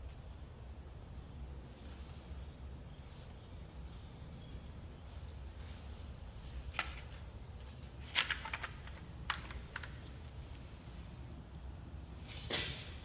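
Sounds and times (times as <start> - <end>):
sharp clicks and light clatter: 8.1 - 10.2.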